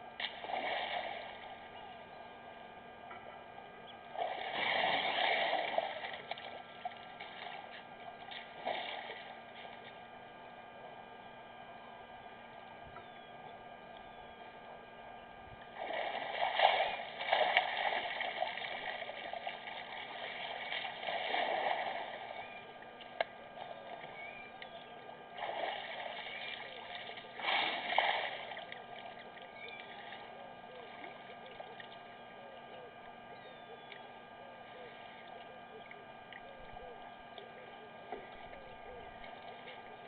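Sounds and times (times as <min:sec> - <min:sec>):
faint electrical hum: 0:00.0 - 0:40.0
water splashing and gushing: 0:04.2 - 0:06.4, 0:15.8 - 0:22.3, 0:25.4 - 0:28.7.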